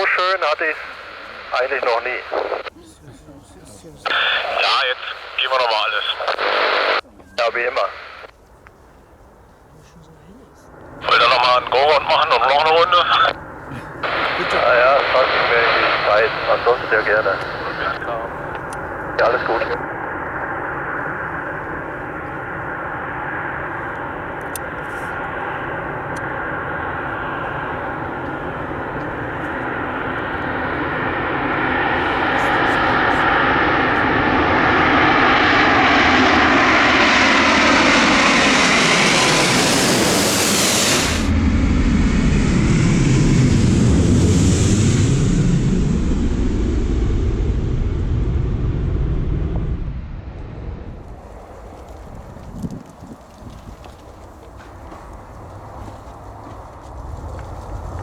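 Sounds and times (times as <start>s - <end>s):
deep rumble of plane on runway: 0.0s - 58.0s
jet engine whine and rumble: 0.0s - 58.0s.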